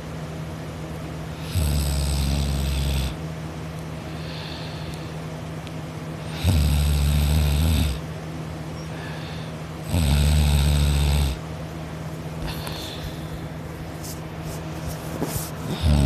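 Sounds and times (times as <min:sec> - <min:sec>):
steady low hum: 0:00.0 - 0:16.0
person snoring: 0:01.4 - 0:03.2, 0:06.2 - 0:08.0, 0:08.9 - 0:11.4, 0:15.6 - 0:16.0.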